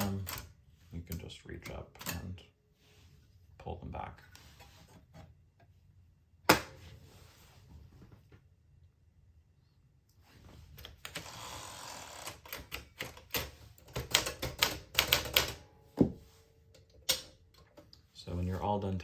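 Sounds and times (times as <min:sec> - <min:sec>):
typewriter keys clicking: 0:12.3 - 0:15.6.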